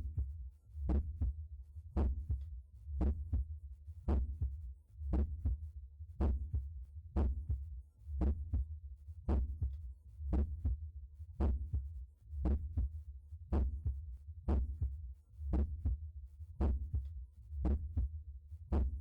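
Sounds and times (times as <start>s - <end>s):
heartbeat through stethoscope: 2.0s - 3.5s, 4.1s - 5.6s, 6.2s - 8.7s, 9.3s - 10.8s, 11.4s - 16.0s, 16.6s - 18.1s.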